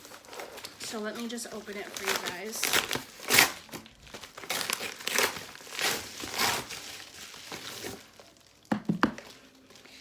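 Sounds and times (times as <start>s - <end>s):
packaging crinkling: 0.0s - 10.0s.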